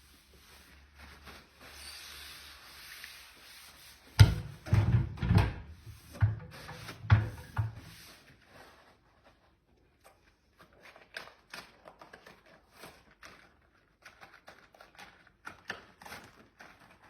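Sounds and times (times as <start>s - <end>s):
heavy knocks and scrapes: 4.1s - 8.1s.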